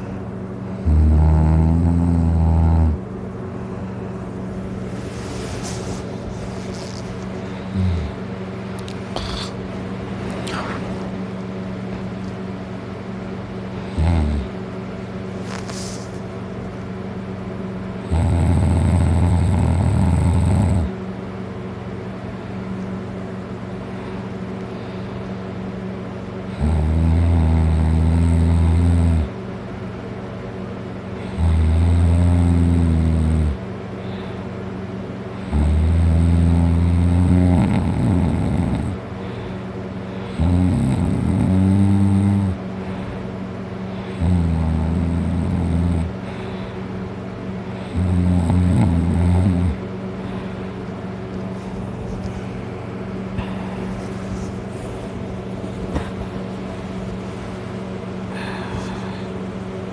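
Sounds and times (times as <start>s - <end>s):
steady background hum: 0.0s - 59.9s
man snoring loudly: 0.8s - 3.0s, 7.7s - 8.2s, 13.9s - 14.5s, 18.0s - 20.9s, 26.5s - 29.3s, 31.2s - 33.6s, 35.4s - 39.0s, 40.3s - 42.6s, 44.2s - 46.1s, 47.9s - 49.8s
snort: 0.8s - 3.0s, 5.6s - 9.6s, 13.8s - 14.6s, 18.0s - 21.0s, 26.5s - 29.4s, 31.2s - 34.4s, 35.3s - 39.0s, 40.2s - 43.2s, 43.9s - 46.9s, 47.7s - 50.6s.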